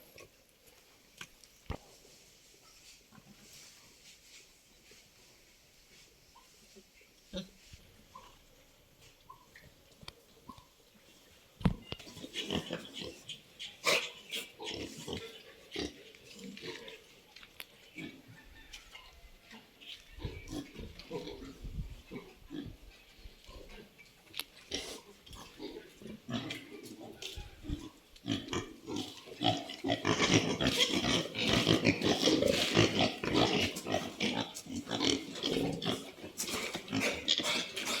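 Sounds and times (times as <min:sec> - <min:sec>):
pigs grunting: 0:12.2 - 0:17.0, 0:20.1 - 0:24.0, 0:24.7 - 0:38.0.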